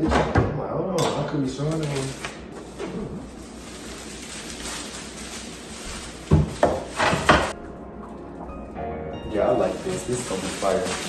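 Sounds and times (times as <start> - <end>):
wrapping rustling: 1.5 - 7.6, 9.4 - 11.0
packaging crinkling and ripping: 1.7 - 7.6, 9.6 - 11.0.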